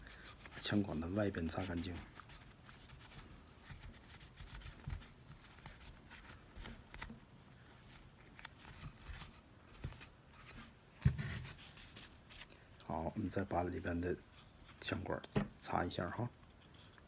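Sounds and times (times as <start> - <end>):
cloth rubbing on metal: 0.0 - 3.2.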